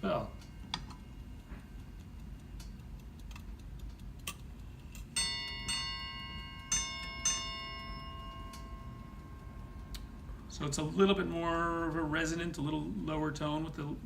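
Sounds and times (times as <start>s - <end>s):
faint clock ticking: 0.0s - 14.0s
clock bell struck by hammer: 5.2s - 9.9s.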